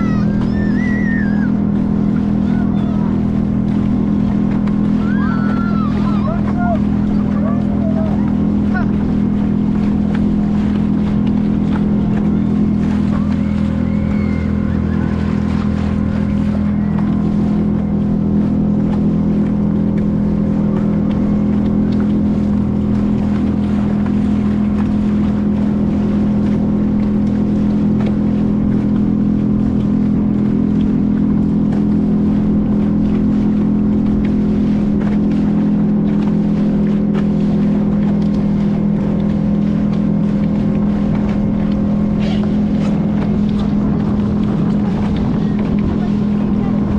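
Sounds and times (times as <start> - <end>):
boat motor droning: 0.0 - 46.9
water noise: 0.0 - 46.9
wind: 0.0 - 46.9.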